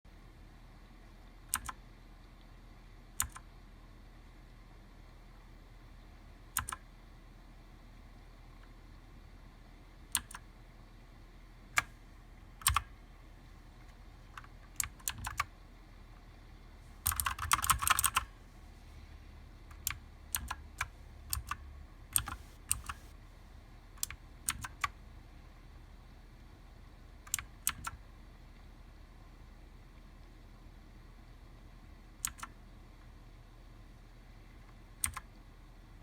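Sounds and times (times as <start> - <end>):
mechanical keyboard keys clicking: 1.5 - 1.8, 3.2 - 3.5, 6.6 - 6.9, 10.1 - 10.5, 12.6 - 12.9, 14.3 - 15.5, 17.0 - 18.3, 19.7 - 23.1, 24.0 - 25.0, 27.2 - 28.0, 32.2 - 32.6, 35.0 - 35.3.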